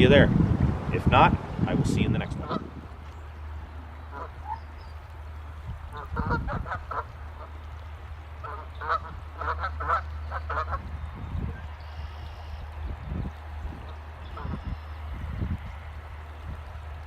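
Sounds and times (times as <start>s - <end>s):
steady low rumble: 0.0s - 17.0s
geese honking: 2.2s - 2.9s, 3.6s - 7.7s, 8.4s - 10.8s, 14.2s - 16.3s.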